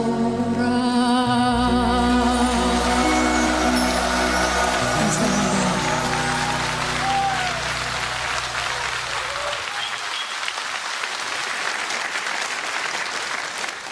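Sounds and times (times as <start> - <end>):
band final held chord: 1.3 - 9.6
audience applauding: 2.3 - 13.9.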